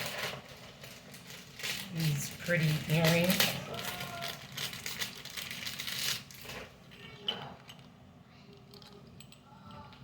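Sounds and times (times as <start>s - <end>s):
plastic wrapping rustling: 0.0s - 8.0s.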